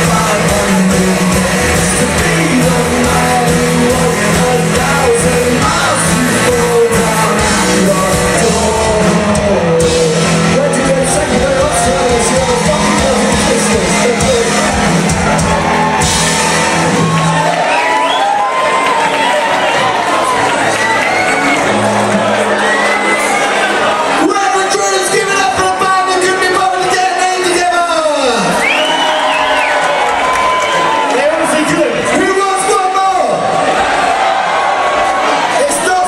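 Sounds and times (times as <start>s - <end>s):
person shouting singing: 0.0s - 14.9s
rock band playing live: 0.0s - 36.0s.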